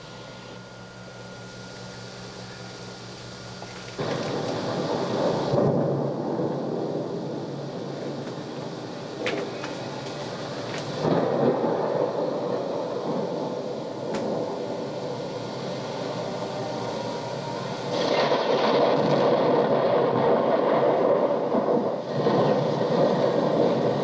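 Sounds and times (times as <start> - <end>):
tape hiss: 0.0 - 24.0.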